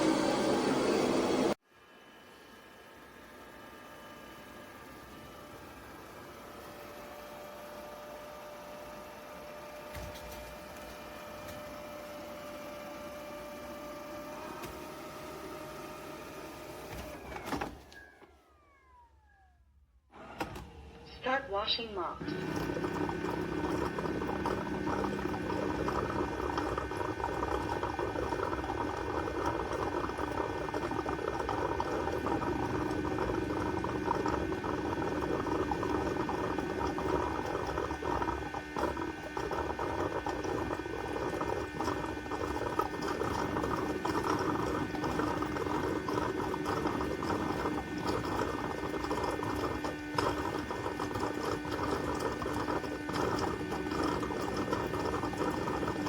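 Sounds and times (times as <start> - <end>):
motor hum: 0.0 - 56.0
water churning: 22.2 - 56.0.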